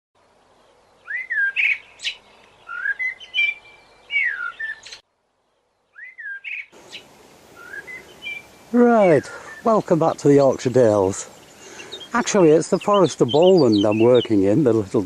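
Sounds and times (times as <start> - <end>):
faint background hiss: 0.2 - 15.0
bird singing whistled phrases: 1.0 - 5.0, 5.9 - 7.0, 7.6 - 9.7, 11.4 - 14.4.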